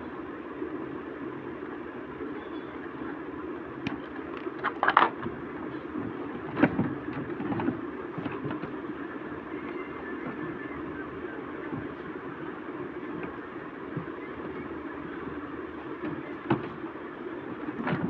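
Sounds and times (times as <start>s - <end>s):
low background hum: 0.0s - 18.0s.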